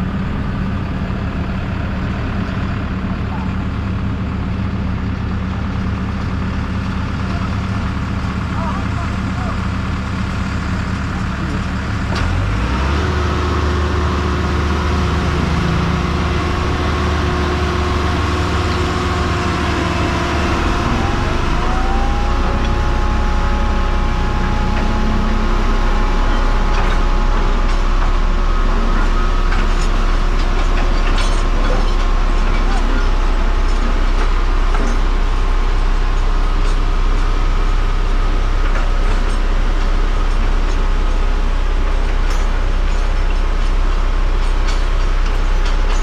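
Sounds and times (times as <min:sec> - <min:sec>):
vehicle engine running: 0:00.0 - 0:46.0
rising engine whine: 0:09.8 - 0:40.3.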